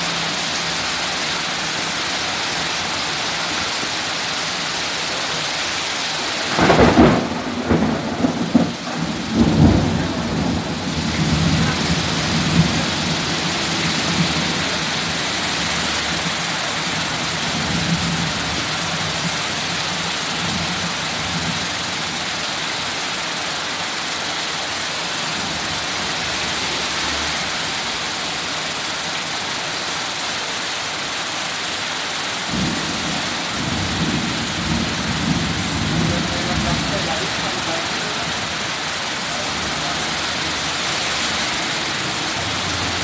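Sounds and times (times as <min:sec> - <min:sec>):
heavy rain pouring: 0:00.0 - 0:43.0
low thunder rumble: 0:06.5 - 0:16.4.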